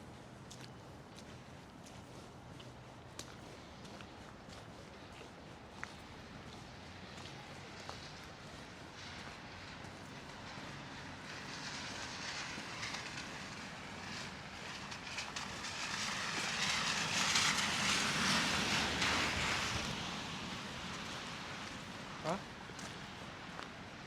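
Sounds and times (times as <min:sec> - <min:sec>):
vehicle driving past: 0:06.9 - 0:22.4.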